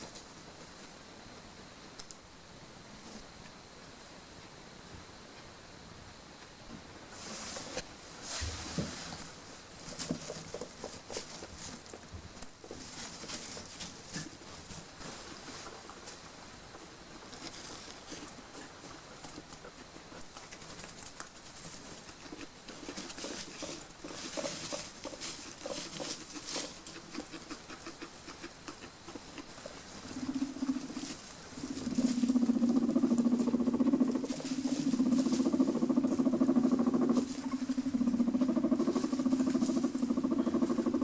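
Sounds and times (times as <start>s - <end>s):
guinea pigs rustling and clicking: 0.0s - 1.0s, 7.1s - 41.0s
guinea pig low vibrating purr: 17.4s - 41.0s.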